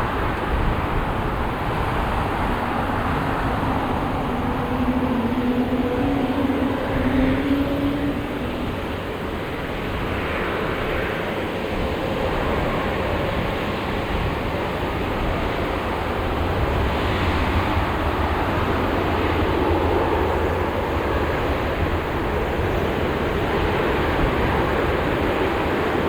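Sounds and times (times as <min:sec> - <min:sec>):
jet engines at takeoff: 0:00.0 - 0:26.0.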